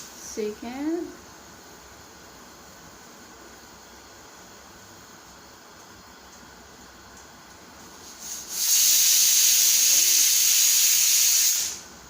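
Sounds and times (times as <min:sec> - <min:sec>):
pressure cooker steam hiss: 0:00.0 - 0:03.1, 0:07.8 - 0:12.0.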